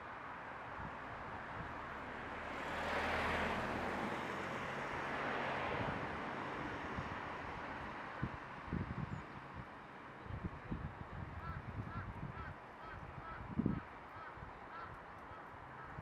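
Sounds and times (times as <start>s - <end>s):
vehicle passing at a distance: 1.5s - 8.8s.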